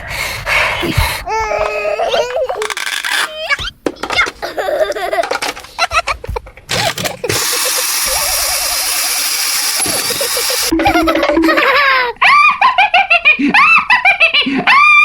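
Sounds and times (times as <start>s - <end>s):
whirring buzz: 6.7s - 11.8s.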